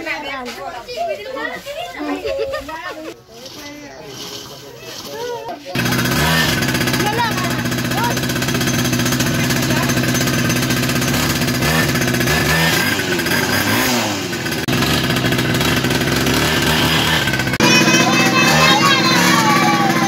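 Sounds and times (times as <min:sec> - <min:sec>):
two-stroke pocket bike engine: 0:04.1 - 0:20.0.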